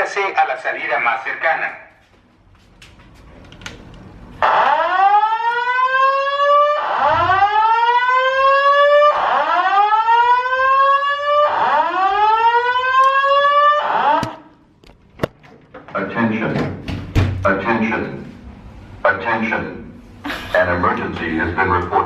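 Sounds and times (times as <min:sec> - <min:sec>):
fire alarm rising whoop tone: 0:04.4 - 0:14.4.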